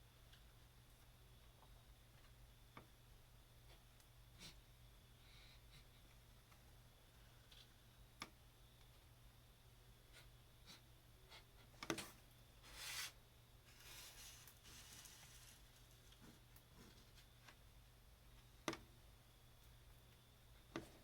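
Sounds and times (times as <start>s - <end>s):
faint breathing: 4.4s - 6.1s.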